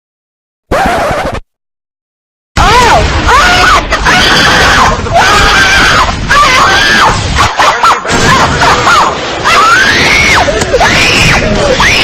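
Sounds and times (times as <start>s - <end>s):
high-pitched voice screaming: 2.6s - 12.0s.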